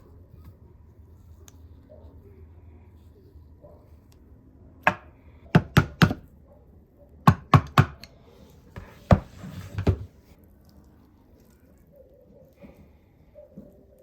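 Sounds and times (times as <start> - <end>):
sharp knocks on hard surface: 4.9 - 6.2.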